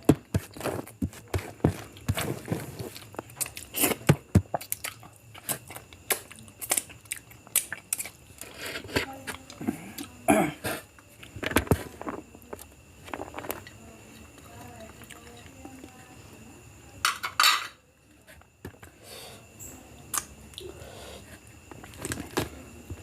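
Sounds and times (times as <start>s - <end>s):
person chewing food: 0.0s - 10.2s.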